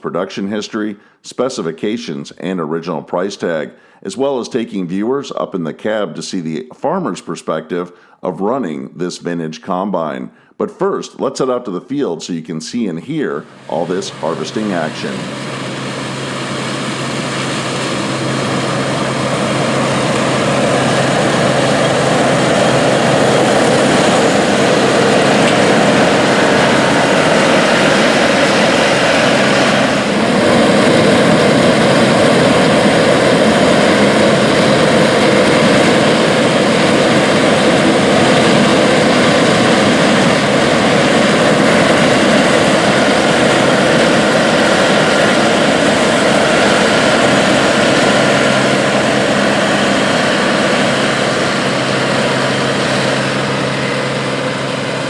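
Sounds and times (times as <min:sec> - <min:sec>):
combine harvester engine and threshing: 0:13.4 - 0:55.0.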